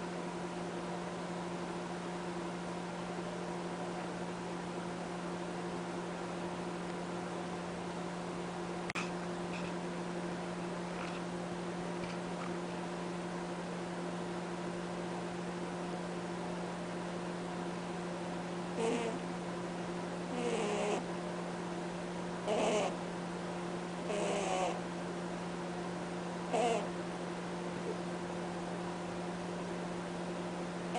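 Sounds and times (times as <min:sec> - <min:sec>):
steady hum: 0:00.0 - 0:30.9
rabbit snoring honks: 0:18.7 - 0:19.2, 0:20.3 - 0:21.1, 0:22.4 - 0:23.0, 0:24.0 - 0:24.8, 0:26.5 - 0:27.0.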